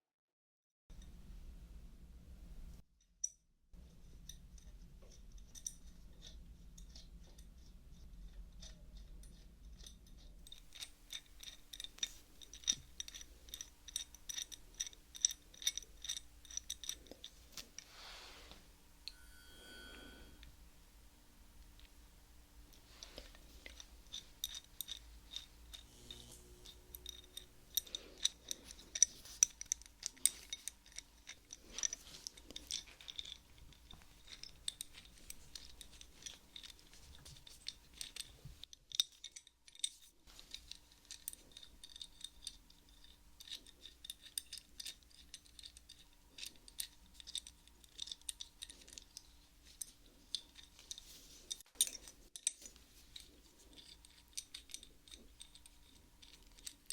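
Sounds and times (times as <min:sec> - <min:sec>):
wrench metallic clicks: 0:23.7 - 0:33.4.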